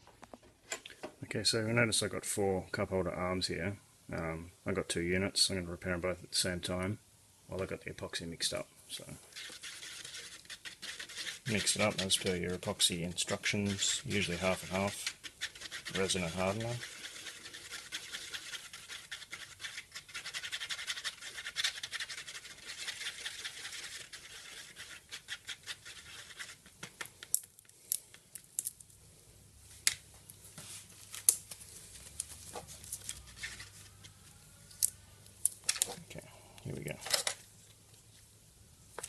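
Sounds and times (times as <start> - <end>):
mixing stick scraping epoxy: 8.9 - 28.2, 31.6 - 34.4.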